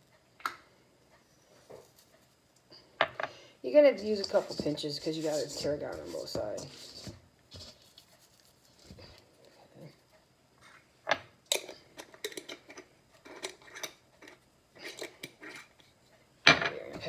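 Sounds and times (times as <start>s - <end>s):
spice containers and dishes clicking: 11.5s - 15.7s.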